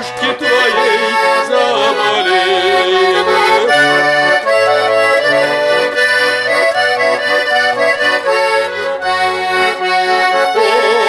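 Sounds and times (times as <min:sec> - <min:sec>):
person singing: 0:00.0 - 0:06.4, 0:10.3 - 0:11.0
accordion melody: 0:00.0 - 0:11.0.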